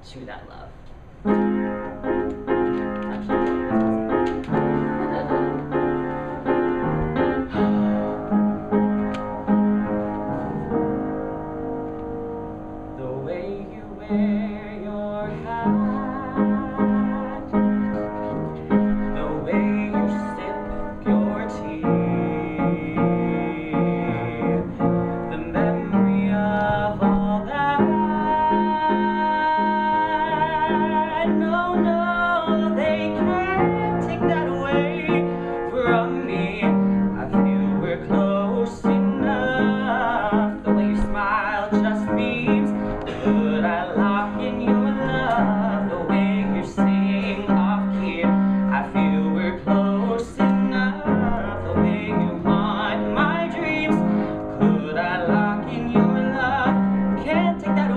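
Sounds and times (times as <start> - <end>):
piano accompaniment: 1.0 - 57.9
man singing with vibrato: 12.9 - 57.9.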